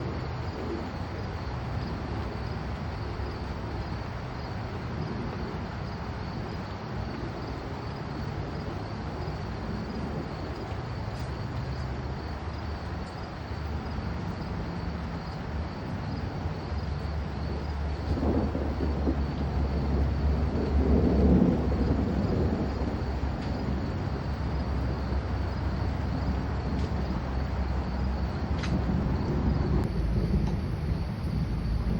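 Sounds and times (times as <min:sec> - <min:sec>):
insects chirring: 0:00.2 - 0:14.4, 0:16.0 - 0:19.3, 0:22.2 - 0:31.9
thunder rumble: 0:17.5 - 0:31.9.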